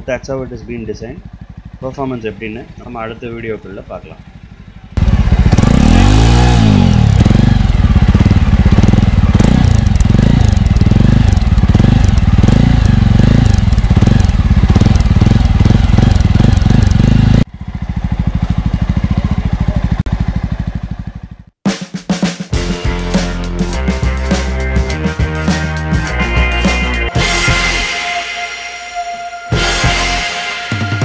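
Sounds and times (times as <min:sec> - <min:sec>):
motorcycle engine running: 0:00.0 - 0:21.6.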